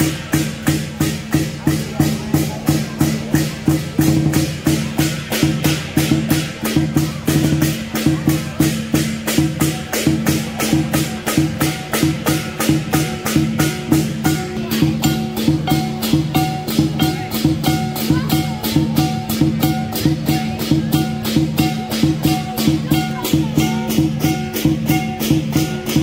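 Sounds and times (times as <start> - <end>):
cymbals: 0.0 - 26.0
drum: 0.0 - 26.0
gong: 8.7 - 26.0.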